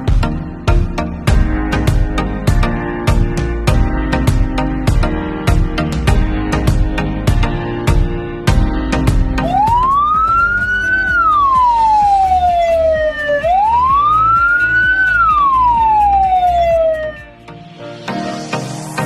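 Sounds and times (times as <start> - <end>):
music: 0.0 - 19.0
ambulance siren wailing: 9.4 - 17.5.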